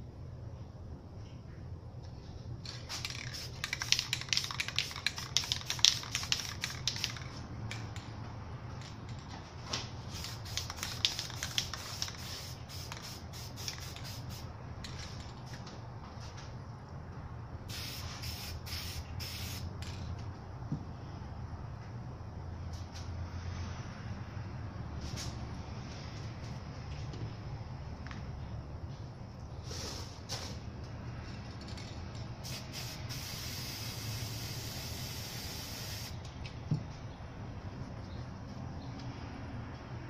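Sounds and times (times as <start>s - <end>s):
spray paint cans hissing: 2.6s - 8.1s, 10.0s - 14.5s, 17.7s - 20.0s, 31.6s - 36.2s.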